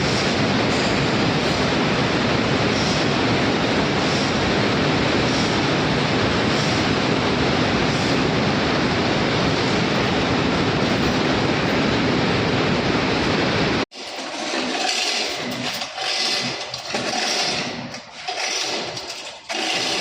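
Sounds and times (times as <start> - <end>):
uneven machine sound: 0.0 - 20.0
concrete saw cutting: 13.9 - 20.0.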